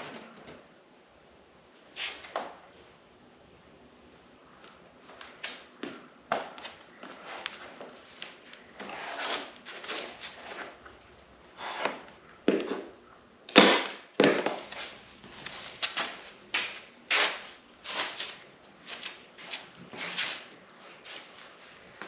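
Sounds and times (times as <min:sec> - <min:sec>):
carpet scraping rustles: 0:06.6 - 0:12.9, 0:14.2 - 0:22.0.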